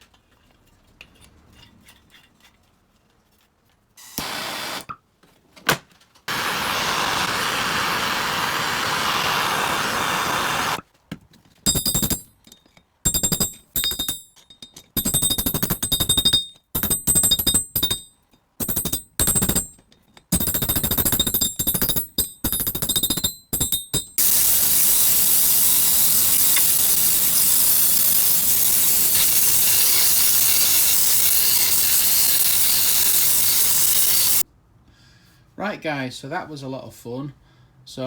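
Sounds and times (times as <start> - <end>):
power tool high whine: 6.3 - 10.8
steady hissing: 6.3 - 10.8.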